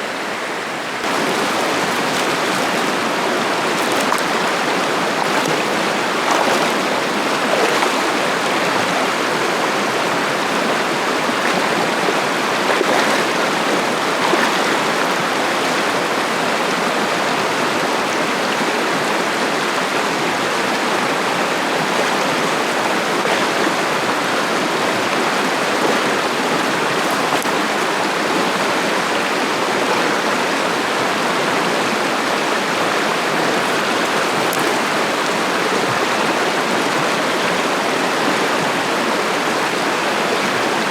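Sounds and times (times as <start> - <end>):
river rushing over rocks: 0.2 - 17.7, 22.5 - 40.9.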